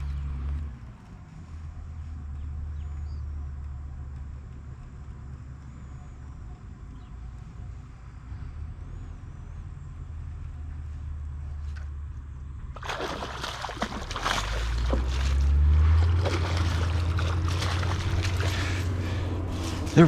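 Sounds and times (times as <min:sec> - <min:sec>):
low rumble: 0:00.0 - 0:20.0
water splashing: 0:12.7 - 0:20.0.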